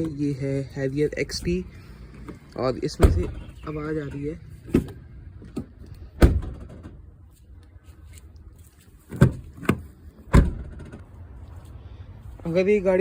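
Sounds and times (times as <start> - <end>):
car rattling knocks: 2.2 - 7.1, 9.1 - 11.1.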